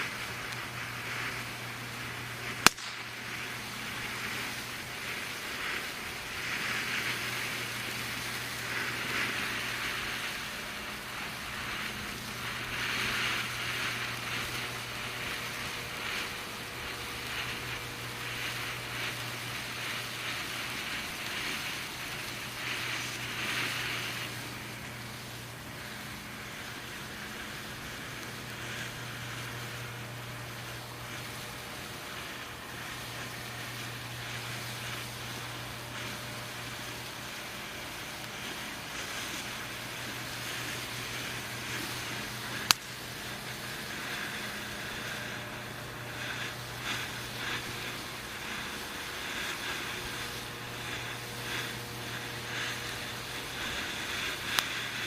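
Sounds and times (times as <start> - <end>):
sharp crack: 0.0 - 29.5, 38.2 - 43.1
fountain firework hissing: 0.0 - 55.0.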